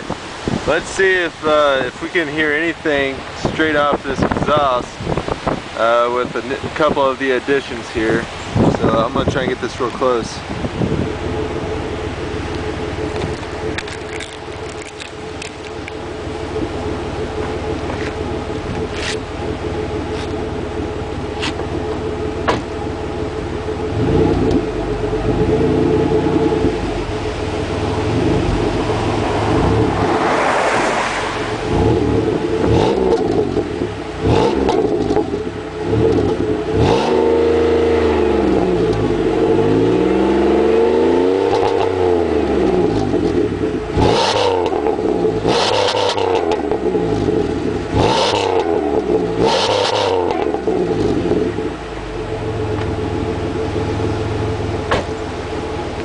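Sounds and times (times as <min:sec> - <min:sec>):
car engine idling and revving: 0:00.0 - 0:56.0.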